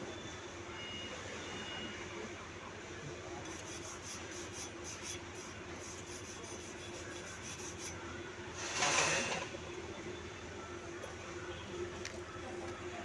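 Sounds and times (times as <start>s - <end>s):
steady hum: 3.4s - 8.8s
rhythmic scraping strokes: 3.5s - 8.0s.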